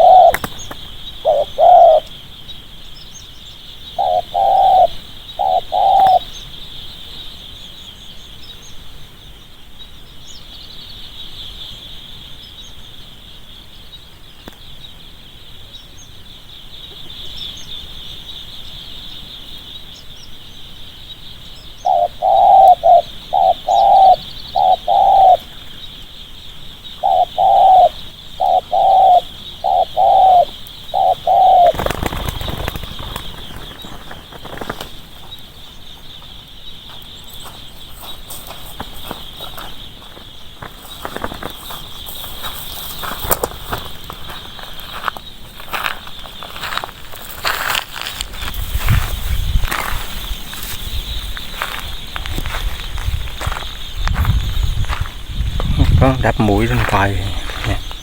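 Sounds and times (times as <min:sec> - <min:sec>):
dove cooing: 0:00.0 - 0:02.2, 0:03.9 - 0:06.3, 0:21.8 - 0:25.8, 0:27.0 - 0:35.0, 0:53.4 - 0:58.0
wings fluttering: 0:00.2 - 0:01.0, 0:31.6 - 0:35.5, 0:37.4 - 0:58.0.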